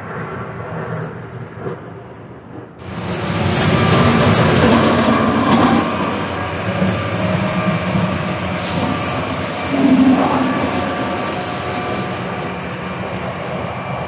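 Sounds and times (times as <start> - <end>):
truck engine running: 2.8 - 14.0.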